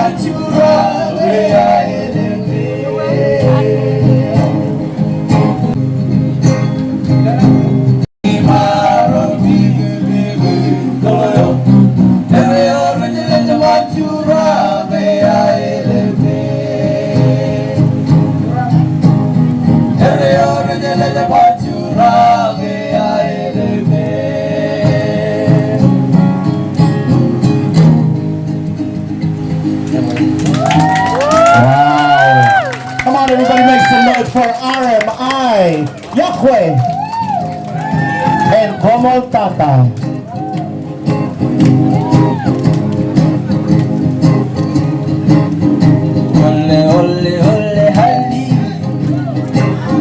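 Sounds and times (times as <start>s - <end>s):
people singing: 0.0s - 5.8s, 8.2s - 18.7s, 19.9s - 26.5s, 46.3s - 50.0s
plucked guitar: 0.0s - 32.7s, 36.8s - 50.0s.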